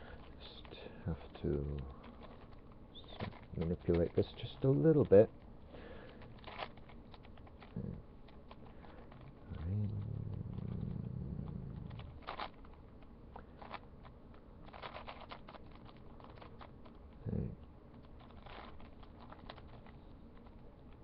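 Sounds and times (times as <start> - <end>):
low steady hum: 0.0 - 21.0
puzzle cube layers clicking: 6.2 - 21.0.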